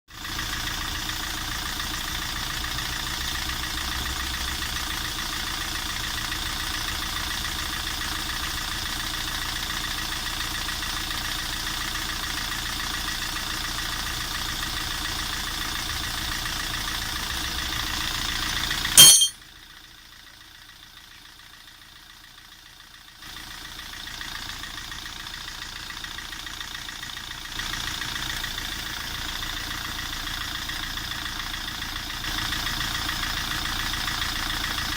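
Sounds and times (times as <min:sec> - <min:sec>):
sharp loud clack: 0:19.0 - 0:19.3.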